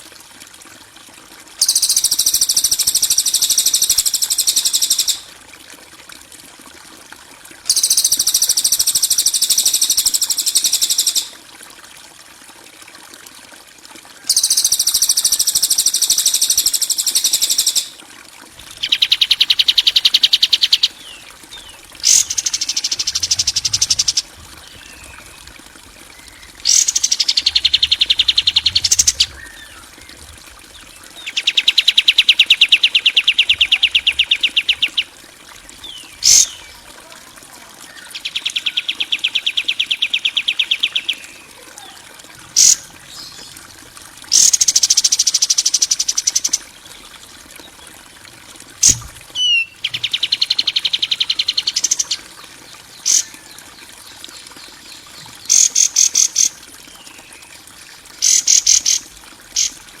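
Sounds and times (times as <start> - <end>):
sharp bird chips: 22.0 - 24.2, 26.7 - 28.2.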